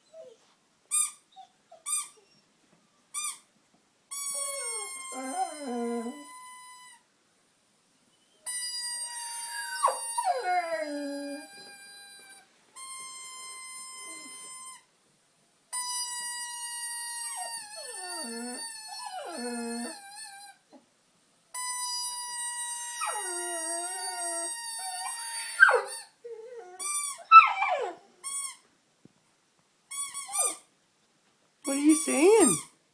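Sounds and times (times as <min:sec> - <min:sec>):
dog howling: 0:04.4 - 0:06.4, 0:09.3 - 0:12.3, 0:17.3 - 0:20.1, 0:23.0 - 0:28.2.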